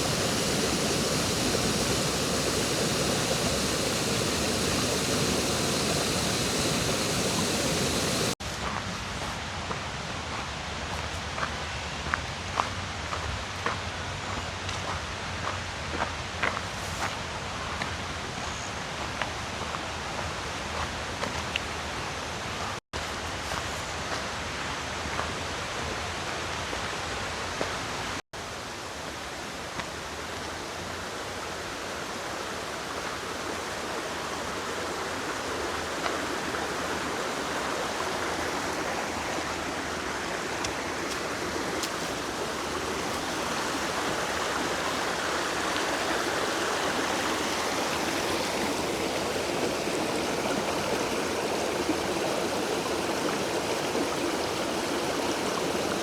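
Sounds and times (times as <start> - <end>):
water running over rocks: 0.0 - 8.4, 29.7 - 56.0.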